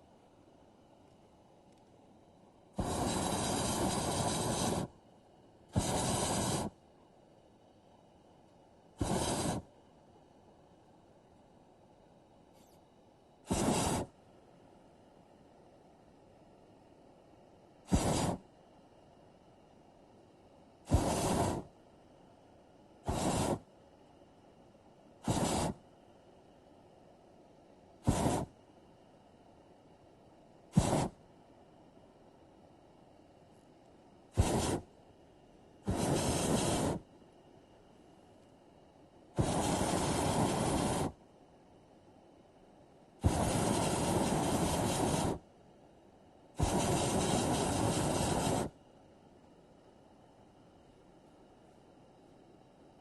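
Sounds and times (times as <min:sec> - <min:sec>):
air hissing out of balloon: 0:02.8 - 0:04.9, 0:05.8 - 0:06.8, 0:09.0 - 0:09.7, 0:13.5 - 0:14.1, 0:17.9 - 0:18.4, 0:20.9 - 0:21.7, 0:23.1 - 0:23.6, 0:25.2 - 0:25.8, 0:28.0 - 0:28.5, 0:30.7 - 0:31.2, 0:34.3 - 0:34.9, 0:35.9 - 0:37.0, 0:39.4 - 0:41.2, 0:43.2 - 0:45.4, 0:46.6 - 0:48.8.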